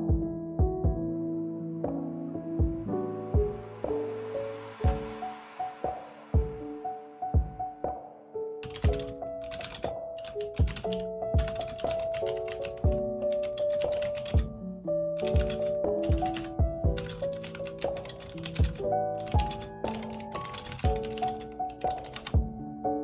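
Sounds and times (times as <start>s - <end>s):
background music: 0.0s - 23.0s
typing on computer keyboard: 8.6s - 14.5s, 15.2s - 22.4s.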